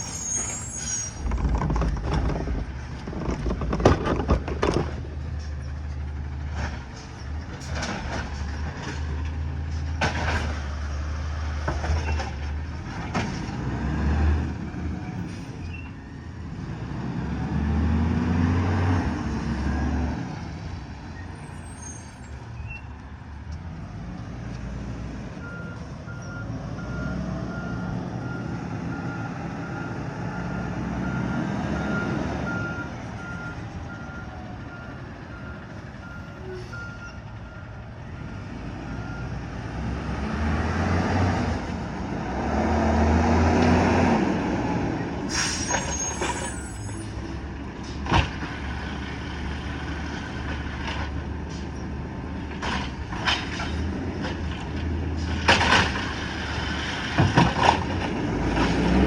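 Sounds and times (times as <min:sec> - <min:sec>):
truck engine revving: 0:16.5 - 0:20.8, 0:38.0 - 0:45.3, 0:53.8 - 0:59.0.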